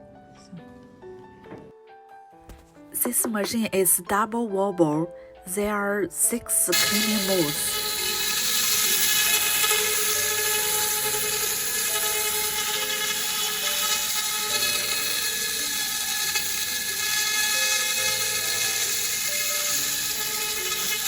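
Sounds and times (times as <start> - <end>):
laser machine hiss and whine: 6.8 - 21.0.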